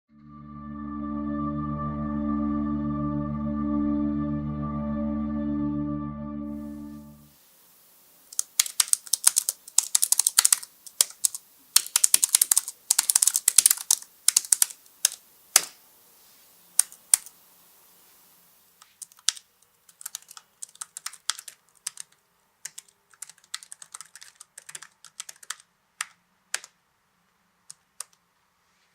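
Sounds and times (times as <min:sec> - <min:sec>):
fast typing on mechanical keyboard: 0:08.4 - 0:15.7, 0:19.0 - 0:26.8.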